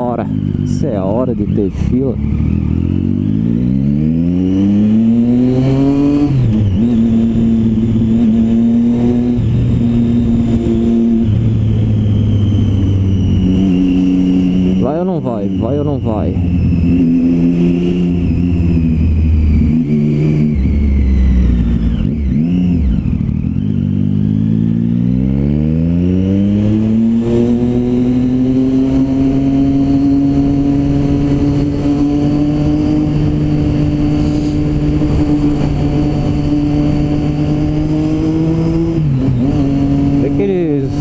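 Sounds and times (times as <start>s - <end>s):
motorcycle engine accelerating: 0.0s - 41.0s
wind and road noise: 0.0s - 41.0s.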